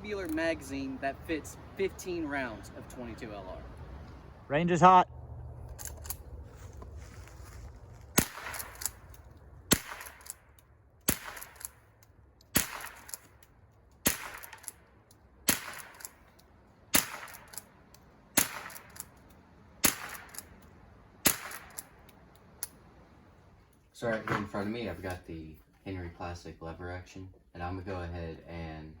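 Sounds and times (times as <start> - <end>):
rifle shots: 8.2 - 11.8, 12.5 - 13.3, 14.0 - 14.8, 15.4 - 16.3, 16.9 - 19.2, 19.8 - 22.0.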